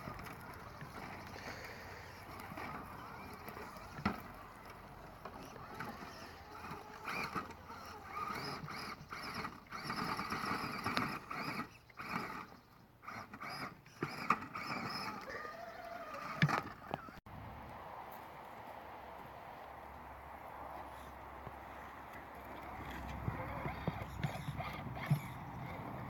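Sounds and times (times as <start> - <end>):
electric motor whining: 0.0 - 17.2, 22.4 - 26.0.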